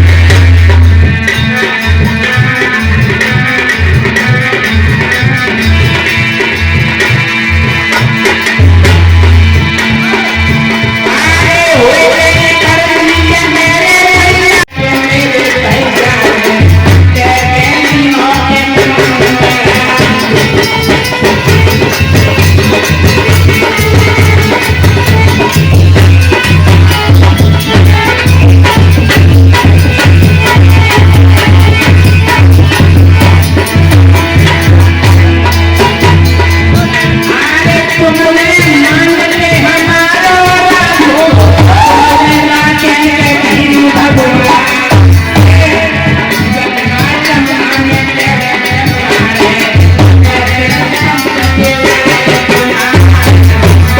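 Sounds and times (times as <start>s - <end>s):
band with heavy drum beat: 0.0s - 53.9s
fast percussion rhythm: 0.0s - 53.9s
person singing: 11.0s - 25.6s, 26.2s - 53.9s.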